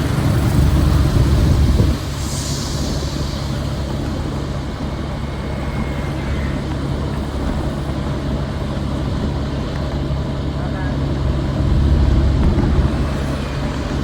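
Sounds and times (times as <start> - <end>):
engine running: 0.0 - 14.0.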